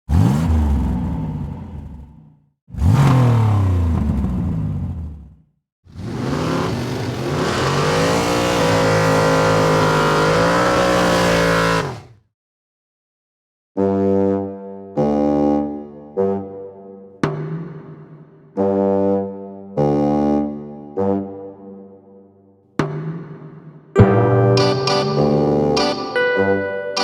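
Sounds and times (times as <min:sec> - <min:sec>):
car engines revving: 0:00.1 - 0:12.0.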